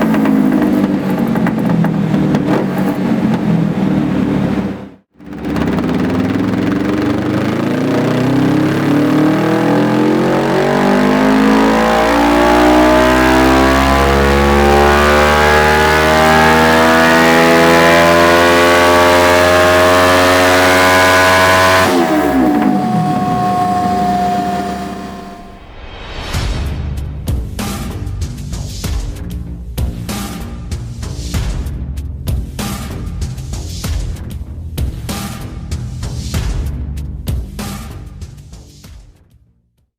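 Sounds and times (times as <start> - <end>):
motorcycle engine revving: 0.0 - 25.7.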